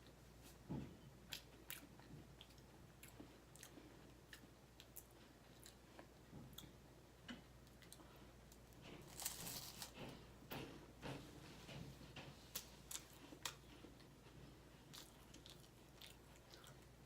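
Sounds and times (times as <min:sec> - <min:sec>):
person chewing crunchy wafers: 0:07.6 - 0:10.0, 0:14.8 - 0:17.0.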